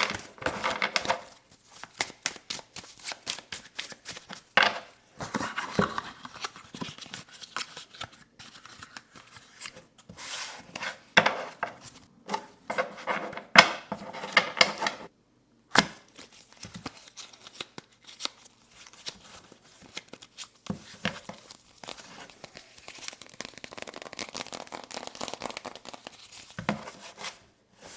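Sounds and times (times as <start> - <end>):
cards shuffling: 0.0 - 5.6, 16.2 - 27.4.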